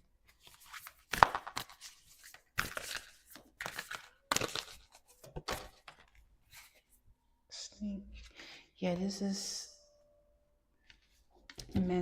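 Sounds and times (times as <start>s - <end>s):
cards being shuffled: 0.3s - 6.8s.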